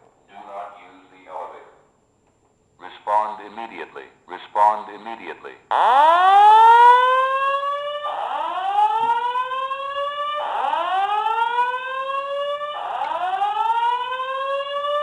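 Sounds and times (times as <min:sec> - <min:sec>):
fire alarm whoop tone: 0:05.7 - 0:15.0.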